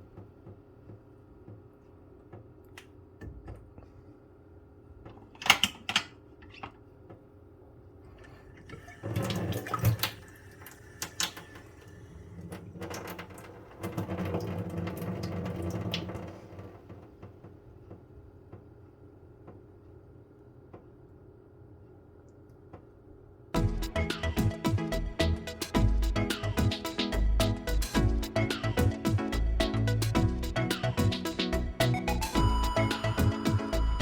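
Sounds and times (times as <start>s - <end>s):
tap water running into sink: 8.6s - 16.6s.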